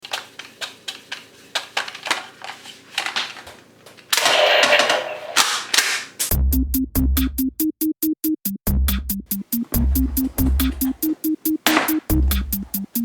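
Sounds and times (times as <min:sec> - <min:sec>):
dense rustling: 0:09.4 - 0:13.0.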